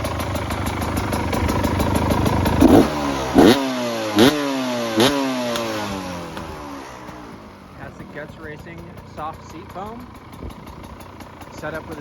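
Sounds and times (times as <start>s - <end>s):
motorcycle engine revving: 0.0s - 12.0s.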